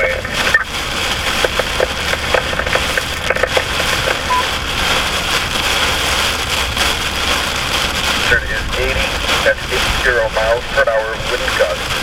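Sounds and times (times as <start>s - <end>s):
heavy rain on vehicle roof: 0.0s - 12.0s.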